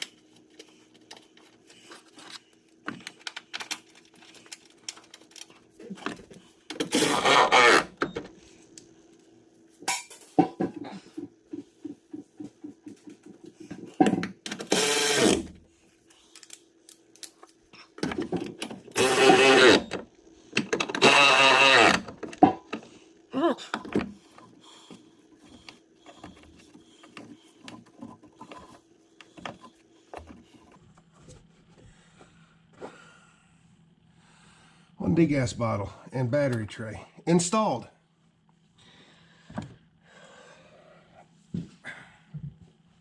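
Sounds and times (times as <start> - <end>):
power tool motor bursts: 6.8 - 8.0, 14.5 - 15.6, 18.9 - 20.1, 20.8 - 22.2
knocks of tools and parts: 9.8 - 14.7, 18.0 - 21.2, 21.9 - 22.9, 23.6 - 31.4.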